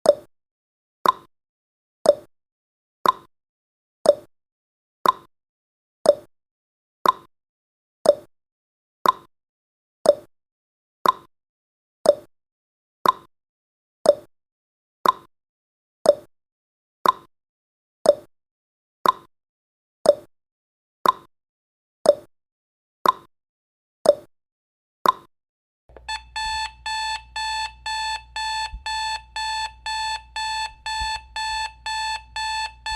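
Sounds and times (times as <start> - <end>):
alarm clock beeping: 25.9 - 32.9
timer ticking: 25.9 - 32.9.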